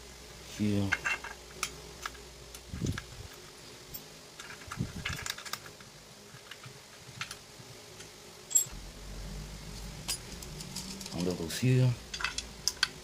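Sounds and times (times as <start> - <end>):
metal parts clicking and clattering: 0.8 - 7.4, 8.5 - 8.7, 9.8 - 13.0.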